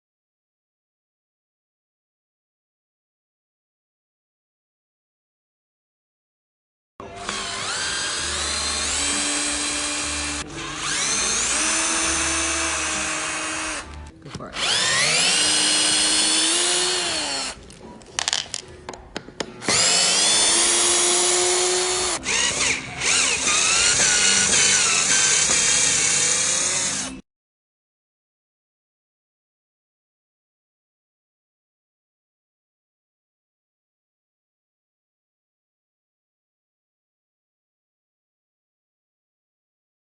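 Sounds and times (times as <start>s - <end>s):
power tool motor whine: 7.1s - 17.6s, 19.6s - 27.2s.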